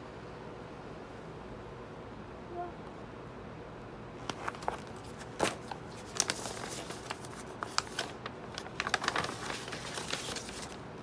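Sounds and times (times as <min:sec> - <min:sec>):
packaging clicks and rustles: 0:04.2 - 0:11.0.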